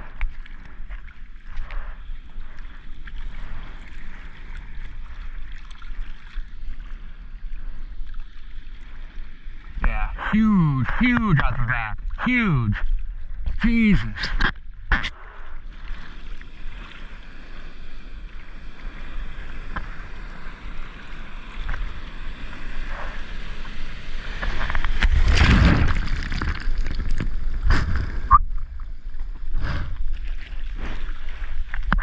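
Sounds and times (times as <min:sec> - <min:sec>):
ocean water sloshing and splashing: 0:00.0 - 0:09.8, 0:14.4 - 0:32.0
rush of water: 0:08.7 - 0:32.0.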